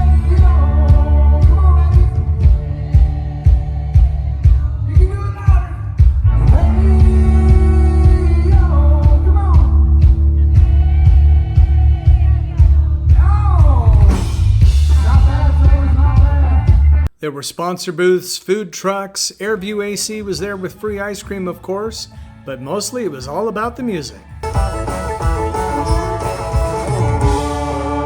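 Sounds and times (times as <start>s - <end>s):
heavy steady bass: 0.0s - 17.1s, 24.4s - 28.0s
person singing: 0.0s - 17.1s, 25.5s - 28.0s
drum kit: 0.0s - 17.2s, 24.4s - 28.0s.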